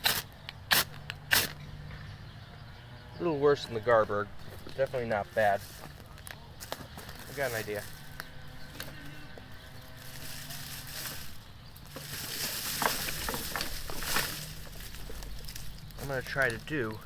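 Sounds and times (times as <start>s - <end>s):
dead wood and leaves rustling: 3.5s - 17.0s.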